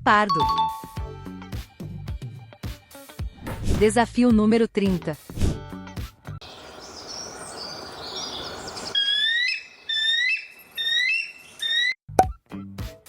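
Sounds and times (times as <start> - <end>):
faint high chirps: 6.4 - 11.7
forest ambience hiss: 6.4 - 11.7
bird whistling rising notes: 6.4 - 12.0.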